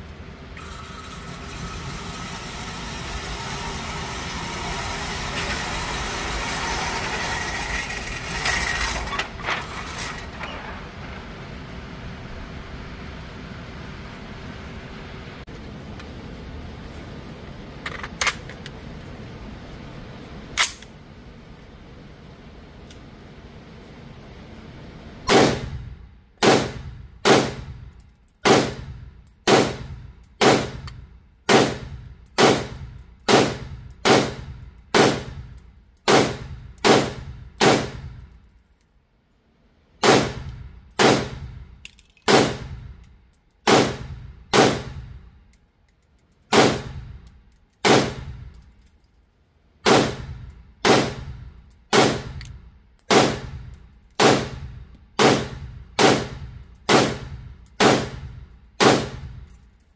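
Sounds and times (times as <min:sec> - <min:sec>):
pistol shots with echo: 0:43.7 - 0:45.0, 0:49.8 - 0:51.3, 0:55.2 - 0:59.2.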